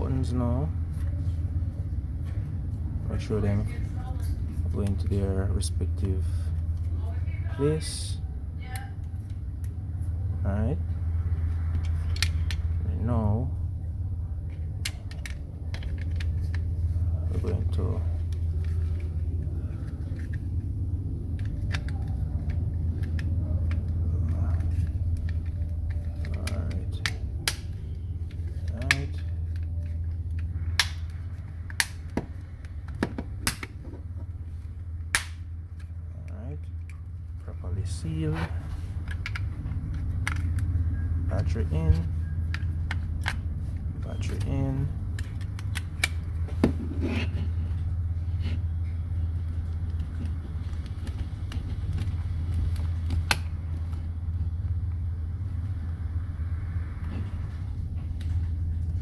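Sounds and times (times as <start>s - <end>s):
low background hum: 0.0s - 59.0s
plastic clips snapping: 21.3s - 33.8s, 35.1s - 35.9s, 49.9s - 54.0s.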